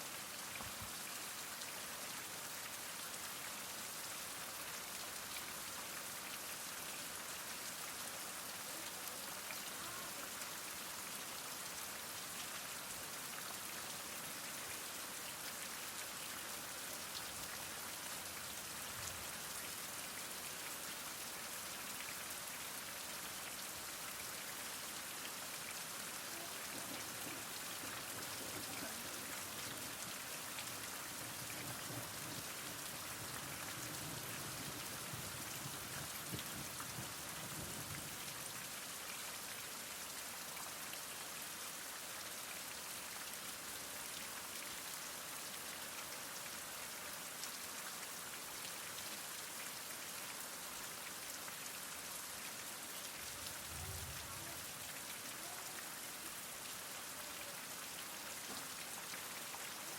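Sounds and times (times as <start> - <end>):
heavy rain falling: 5.2 - 14.9, 24.0 - 39.0, 52.4 - 59.9.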